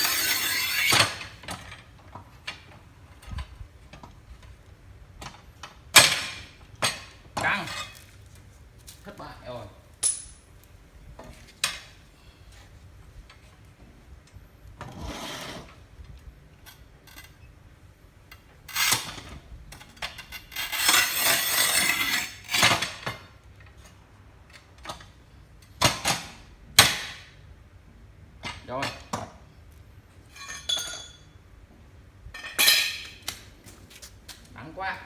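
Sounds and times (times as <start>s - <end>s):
scoring wheel scraping tile: 14.8s - 15.8s, 20.4s - 23.0s
tile and metal clinking: 30.3s - 31.2s.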